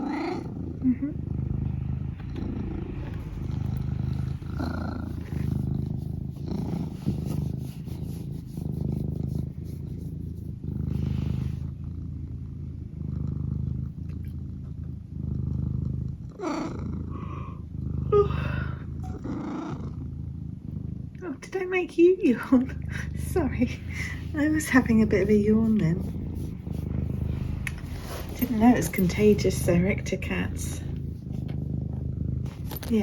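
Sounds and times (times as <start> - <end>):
cat vocalizing: 0.0 - 11.6, 22.7 - 32.7
cat purring: 0.0 - 33.0.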